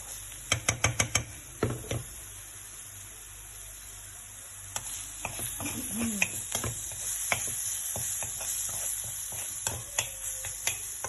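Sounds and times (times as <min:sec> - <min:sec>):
frying oil hissing: 0:00.0 - 0:11.0
spatula tapping a frying pan: 0:00.4 - 0:02.0, 0:04.8 - 0:11.0.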